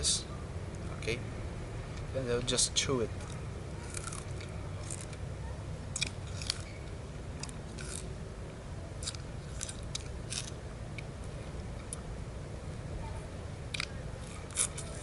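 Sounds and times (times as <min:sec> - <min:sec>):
person chewing sugarcane: 0:03.2 - 0:05.2, 0:05.9 - 0:06.8, 0:07.4 - 0:08.1, 0:09.0 - 0:11.1, 0:13.7 - 0:15.0.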